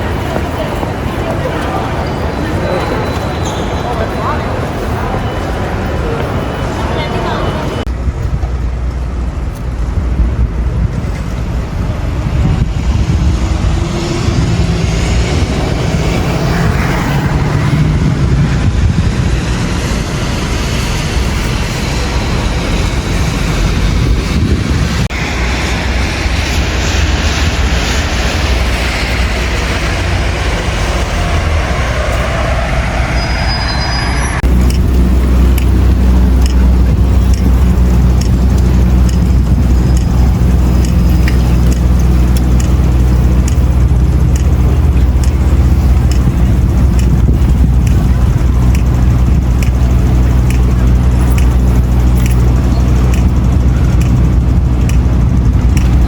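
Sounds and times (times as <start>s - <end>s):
wind rumble on microphone: 7.4s - 56.0s
vehicle passing: 12.3s - 56.0s.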